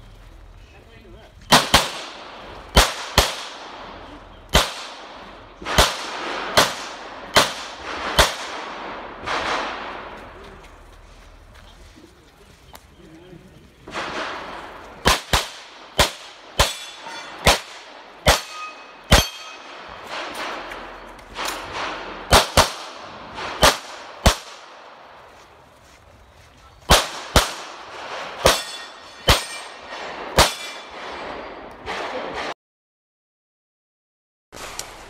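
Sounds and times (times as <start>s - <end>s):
pistol shots: 1.5s - 10.2s, 13.9s - 24.8s, 26.9s - 32.5s.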